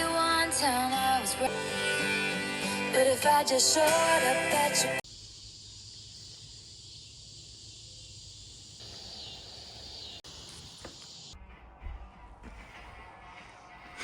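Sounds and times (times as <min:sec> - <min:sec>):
crickets chirping: 0:05.0 - 0:11.4.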